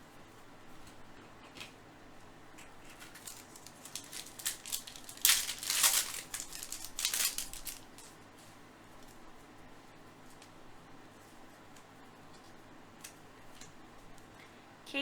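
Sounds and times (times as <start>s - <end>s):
foil wrapper tearing and crinkling: 2.8s - 8.2s.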